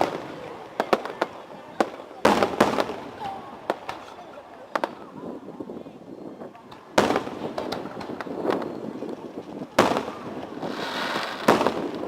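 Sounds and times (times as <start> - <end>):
firework booms echoing: 0.0 - 3.9, 7.0 - 8.7, 9.7 - 12.0
firework crackles: 0.0 - 5.7, 6.7 - 12.0.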